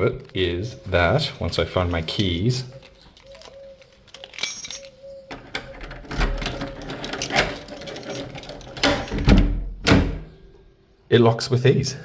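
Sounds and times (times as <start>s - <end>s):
key turning in door lock: 2.1s - 9.6s
keys jangling: 2.2s - 5.3s, 5.9s - 9.2s.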